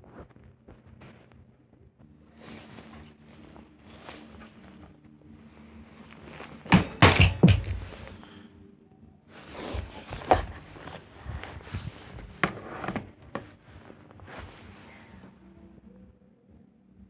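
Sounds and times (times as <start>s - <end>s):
loud knocks: 6.7s - 8.0s.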